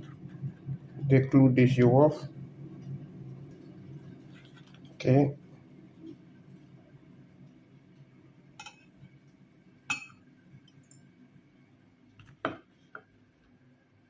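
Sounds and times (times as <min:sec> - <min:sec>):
cup clinking: 0:08.6 - 0:08.9, 0:09.9 - 0:10.2.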